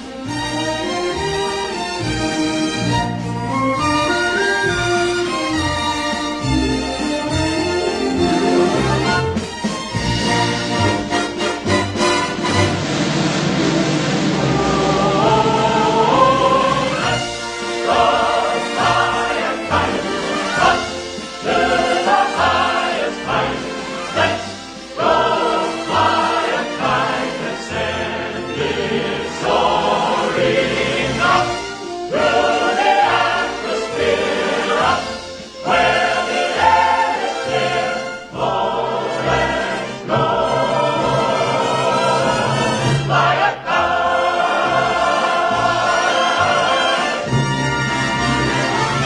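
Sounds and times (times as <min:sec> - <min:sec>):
choir singing with orchestra: 0:00.0 - 0:49.0.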